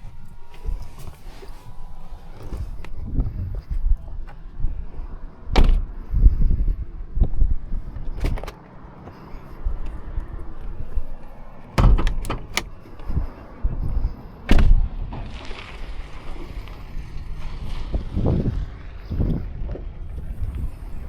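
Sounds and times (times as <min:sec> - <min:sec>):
low handling rumble: 0:00.0 - 0:21.0
car door knocks and clicks: 0:05.5 - 0:06.0, 0:07.2 - 0:08.6, 0:11.8 - 0:12.8, 0:14.5 - 0:14.8.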